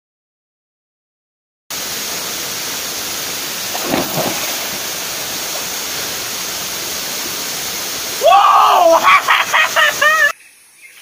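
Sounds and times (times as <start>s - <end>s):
waterfall rushing: 1.7s - 10.3s.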